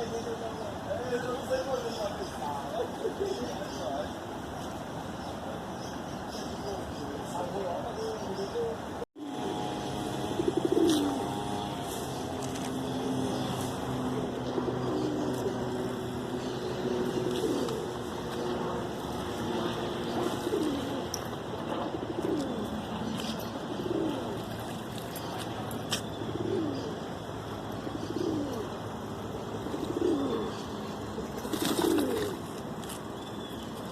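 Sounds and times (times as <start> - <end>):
dove cooing: 9.2 - 32.6.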